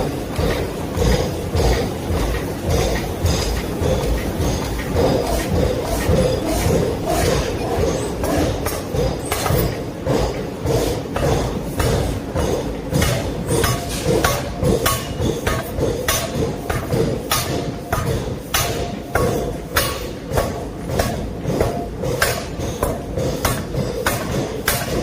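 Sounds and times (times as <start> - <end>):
hammer striking metal: 4.5 - 10.3, 11.2 - 25.0.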